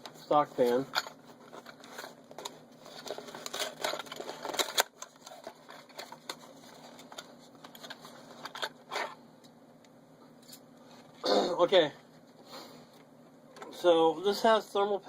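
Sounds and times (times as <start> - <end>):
cooler handling clicks and rustles: 0.2 - 9.2.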